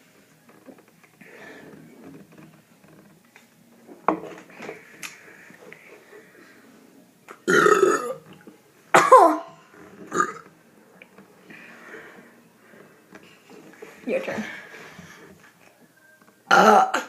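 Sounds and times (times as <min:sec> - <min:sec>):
person burping loudly: 0:07.4 - 0:08.2, 0:10.1 - 0:10.4, 0:16.5 - 0:17.0.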